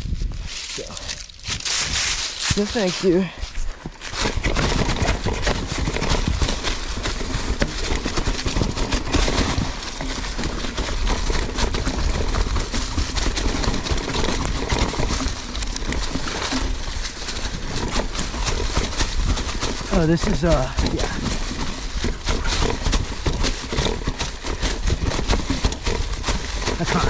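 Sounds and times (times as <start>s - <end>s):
wind rumble on microphone: 0.0s - 10.4s
bike rattling: 0.0s - 27.0s
bike tyres crunching on rocks: 0.1s - 27.0s.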